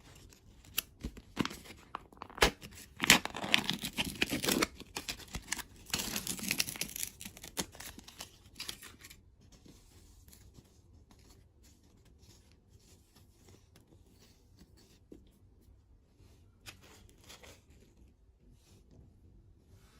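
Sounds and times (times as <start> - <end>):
wrapper tearing and crumpling: 0.8 - 9.1.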